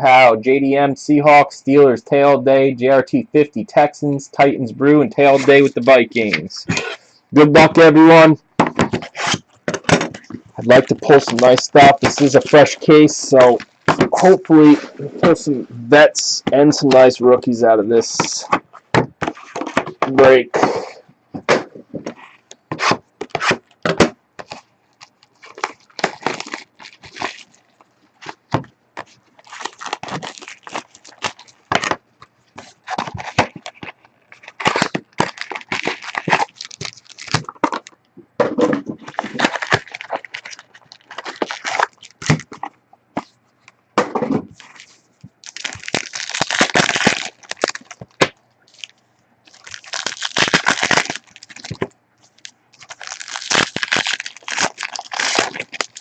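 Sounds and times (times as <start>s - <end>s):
cardboard clicks and knocks: 8.6s - 10.4s, 21.3s - 24.6s
plastic wrap crinkling and tearing: 8.8s - 15.4s, 24.4s - 32.0s, 32.6s - 37.9s, 39.0s - 42.7s, 44.6s - 56.0s.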